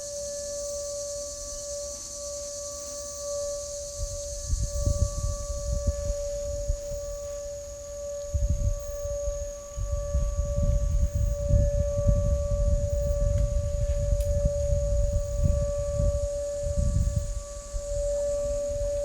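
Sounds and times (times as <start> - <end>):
steady siren-like tone: 0.0 - 19.0
low rumble: 8.3 - 19.0.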